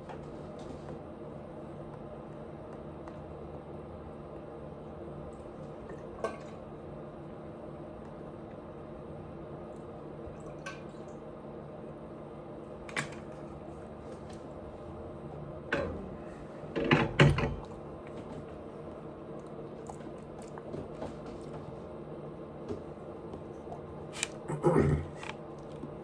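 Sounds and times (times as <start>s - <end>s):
steady low hum: 0.0s - 26.0s
wet chewing and mouth smacks: 19.4s - 21.6s, 23.6s - 24.5s, 25.2s - 26.0s.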